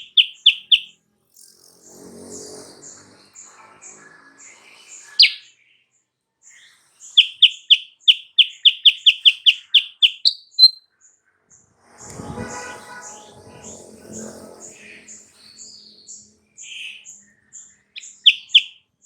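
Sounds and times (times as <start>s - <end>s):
bird singing whistled notes: 0.0s - 0.9s, 4.5s - 5.8s, 6.6s - 10.9s, 15.1s - 18.9s
faint high chirps: 0.0s - 1.0s, 5.2s - 5.7s, 6.6s - 10.9s, 16.6s - 18.9s.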